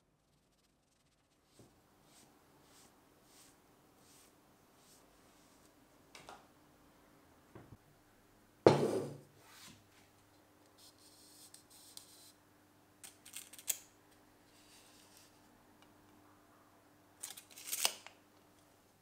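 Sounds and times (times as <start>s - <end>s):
solid knock on workbench: 8.7s - 9.2s.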